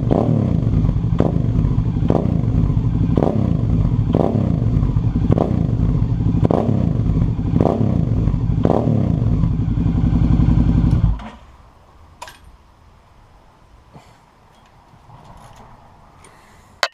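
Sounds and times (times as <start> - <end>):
motorcycle engine revving: 0.0 - 11.4.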